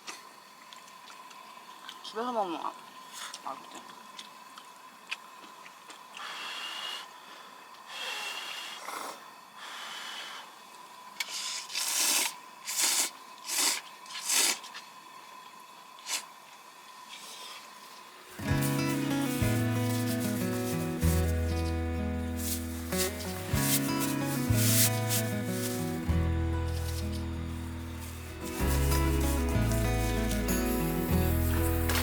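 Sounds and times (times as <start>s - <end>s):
noodles being slurped: 11.2s - 14.9s, 16.0s - 16.3s, 18.4s - 26.1s, 27.7s - 32.0s.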